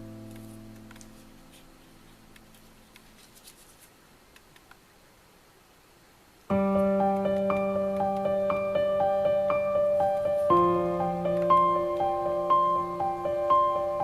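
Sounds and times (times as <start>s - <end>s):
held keyboard chord: 0.0s - 2.4s, 6.5s - 14.0s
soft electric piano melody: 0.0s - 3.0s, 6.5s - 14.0s.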